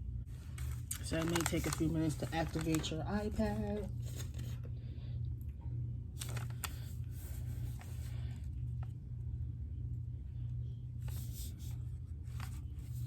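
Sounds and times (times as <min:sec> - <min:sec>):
low room hum: 0:00.0 - 0:13.0
tablet being handled: 0:00.3 - 0:04.7, 0:06.2 - 0:08.2, 0:11.0 - 0:13.0.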